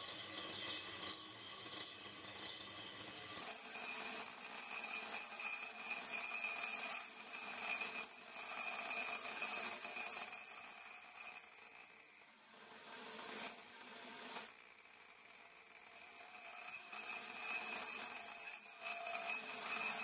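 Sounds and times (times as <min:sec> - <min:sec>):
lathe cutting steel squealing: 0:00.0 - 0:08.9, 0:16.6 - 0:20.0.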